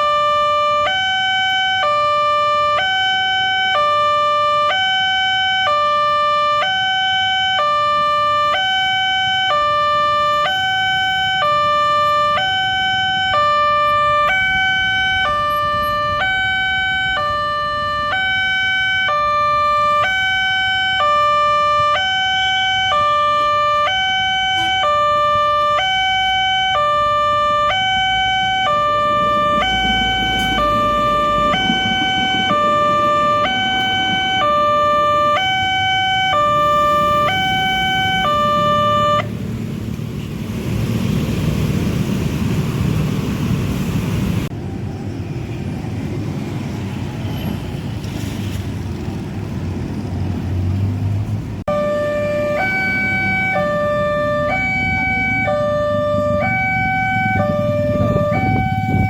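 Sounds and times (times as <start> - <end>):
two-tone warning siren: 0.0 - 39.8, 51.6 - 59.0.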